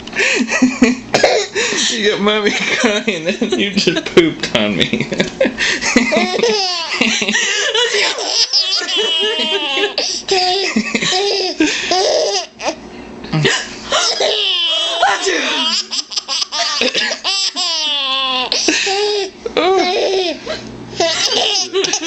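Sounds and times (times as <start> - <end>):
adult laughing: 0.2 - 1.1, 4.8 - 12.0, 13.3 - 17.8, 18.4 - 19.6, 20.5 - 22.0
baby laughing: 6.0 - 12.8, 13.9 - 22.0.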